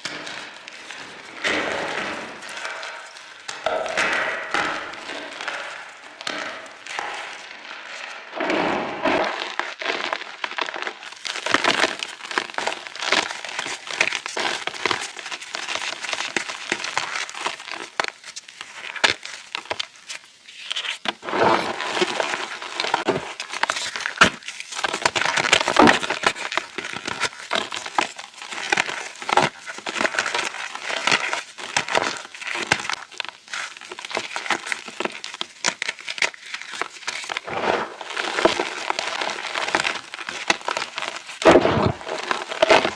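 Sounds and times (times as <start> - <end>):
chalk being crushed: 9.2 - 42.9.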